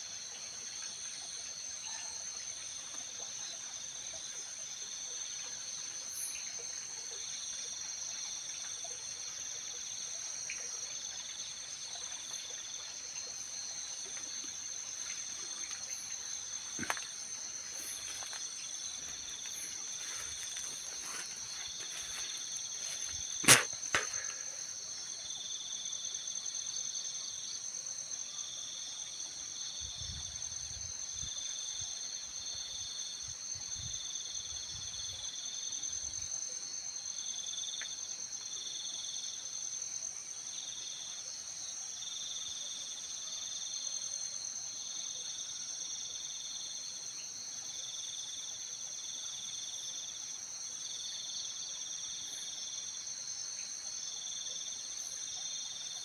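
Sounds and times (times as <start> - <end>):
night insects calling: 0.0 - 56.0
pulsing insect trill: 10.4 - 25.6.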